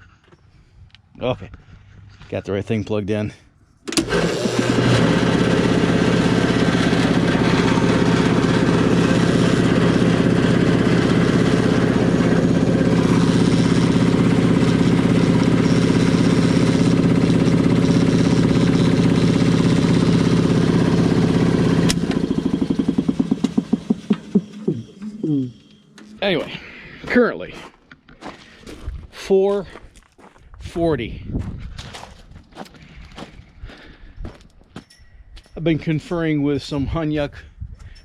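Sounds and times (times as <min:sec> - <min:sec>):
piston pump coasting down: 0:03.9 - 0:26.2
air compressor running: 0:03.9 - 0:27.1.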